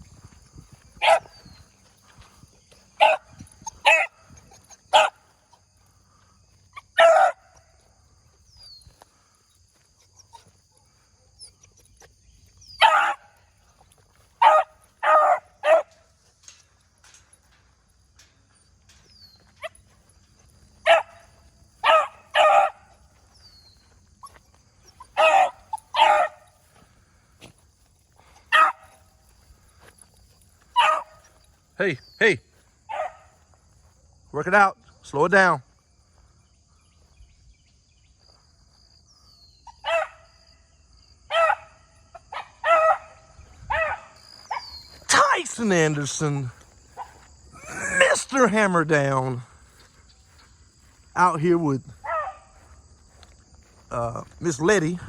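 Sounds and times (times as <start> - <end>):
crickets chirring: 0.0 - 55.0
dog yelp: 1.0 - 1.4, 3.0 - 5.2, 7.0 - 7.4, 12.8 - 13.3, 14.4 - 15.9, 20.9 - 21.2, 21.8 - 22.8, 24.2 - 26.4, 28.5 - 28.8, 30.8 - 31.2, 39.7 - 40.2, 41.3 - 41.7, 42.3 - 45.2, 52.0 - 52.5
hound baying: 1.0 - 1.7, 2.9 - 5.3, 6.7 - 7.7, 12.7 - 13.4, 14.4 - 16.0, 20.8 - 26.6, 28.2 - 29.0, 30.7 - 31.5, 32.9 - 33.4, 41.3 - 45.4, 52.0 - 52.6.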